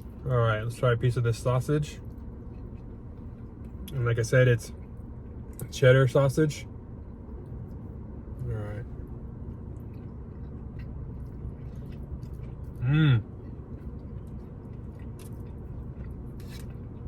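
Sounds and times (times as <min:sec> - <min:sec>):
steady low hum: 0:00.0 - 0:17.0
man chewing: 0:02.0 - 0:04.0, 0:08.9 - 0:17.0
man humming approval: 0:12.8 - 0:13.3.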